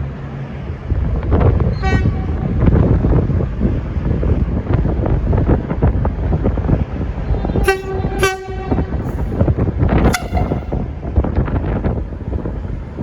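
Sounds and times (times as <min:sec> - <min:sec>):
train rumbling: 0:00.0 - 0:13.0
train horn blasts: 0:01.8 - 0:02.6, 0:07.6 - 0:09.4, 0:10.0 - 0:11.0.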